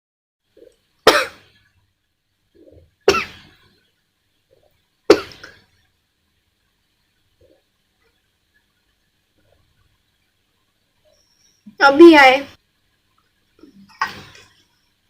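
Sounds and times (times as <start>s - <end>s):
woman coughing: 3.1s - 3.4s.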